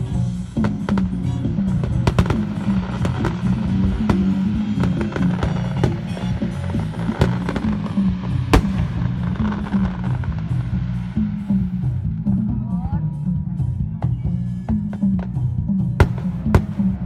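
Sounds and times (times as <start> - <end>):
music with low bass line: 0.0 - 17.0
fireworks bangs: 0.5 - 11.7, 16.0 - 17.0.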